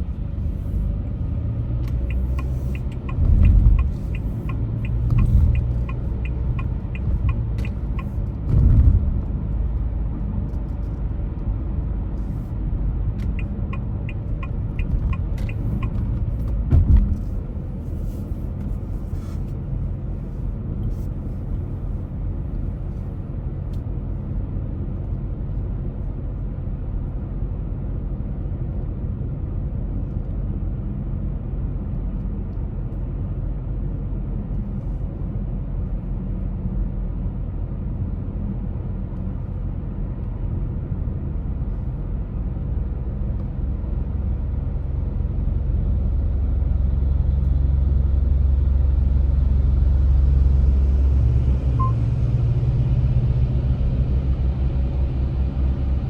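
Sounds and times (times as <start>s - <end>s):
car driving rumble: 0.0s - 56.0s
turn signal ticking: 1.8s - 8.4s, 13.2s - 17.2s.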